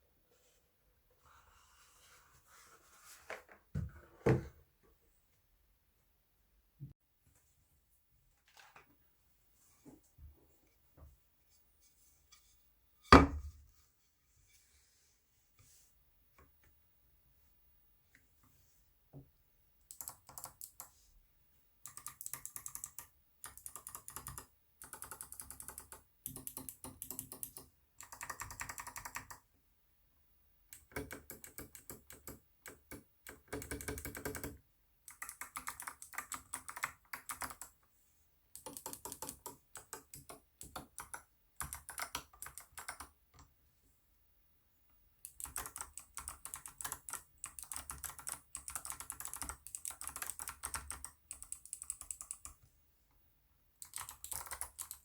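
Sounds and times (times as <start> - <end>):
clicky mechanical keyboard typing: 19.9 - 20.9, 21.9 - 29.4, 30.8 - 37.8, 38.6 - 43.2, 45.2 - 52.6, 53.8 - 55.0.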